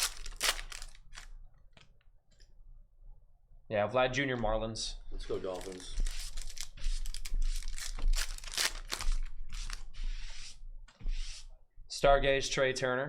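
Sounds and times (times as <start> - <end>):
foil wrappers crinkling and tearing: 0.0 - 1.4, 5.4 - 9.8
cards clicking and sliding: 5.4 - 9.9.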